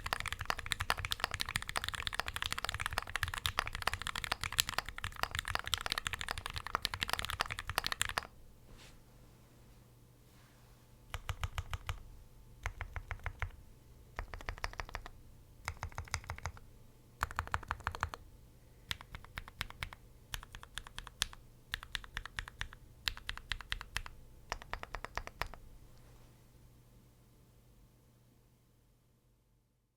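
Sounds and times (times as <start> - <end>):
mechanical keyboard typing: 0.0 - 8.3, 11.1 - 12.0, 12.6 - 13.6, 14.2 - 16.6, 17.2 - 18.2, 18.9 - 25.6.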